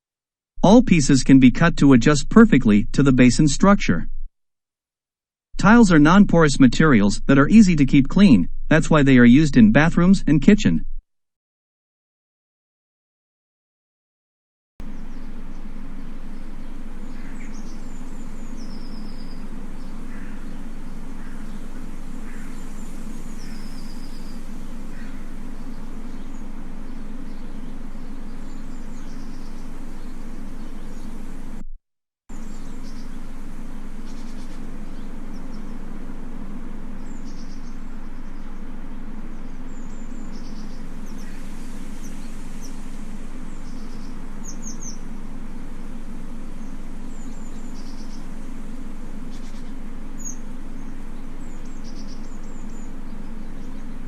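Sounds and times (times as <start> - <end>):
steady low hum: 5.6 - 11.0, 14.8 - 31.7, 32.3 - 54.0
birds chirping: 14.8 - 31.6, 32.4 - 54.0.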